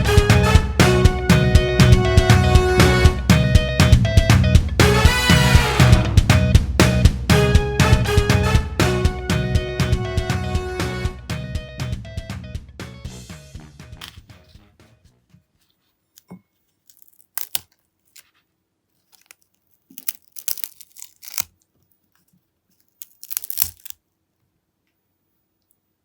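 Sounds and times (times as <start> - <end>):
crackers crunching: 16.8 - 24.0.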